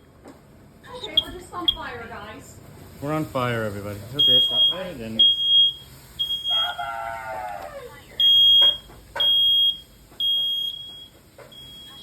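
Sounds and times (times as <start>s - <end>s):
smoke alarm beeping: 1.0s - 2.1s, 4.2s - 6.9s, 8.1s - 12.0s.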